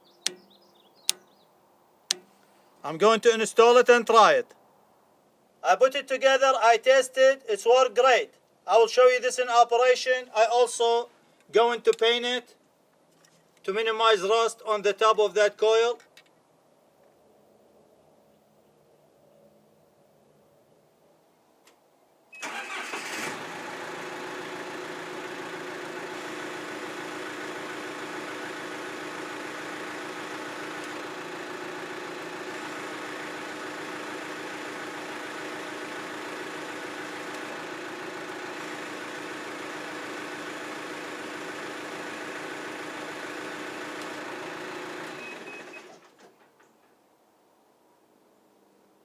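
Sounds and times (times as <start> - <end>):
diesel engine running: 22.4 - 46.0.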